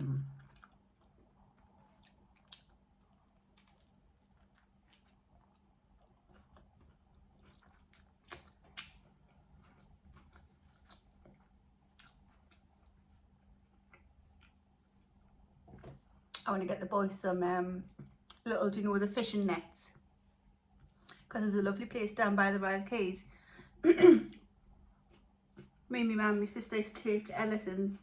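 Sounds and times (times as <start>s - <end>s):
chewing sandwich: 0.3s - 15.5s.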